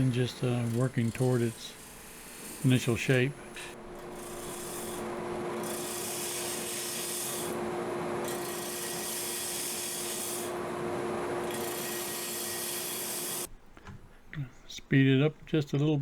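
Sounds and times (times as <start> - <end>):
gouge cutting wood on lathe: 0.0 - 13.5
steady lathe hum: 0.0 - 13.5.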